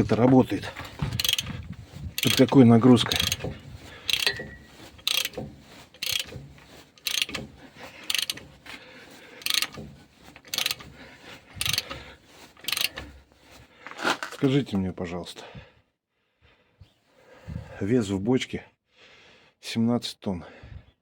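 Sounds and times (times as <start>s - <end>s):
metal ratchet clicking: 1.1s - 1.6s, 2.2s - 8.8s, 9.4s - 11.0s, 11.6s - 13.1s.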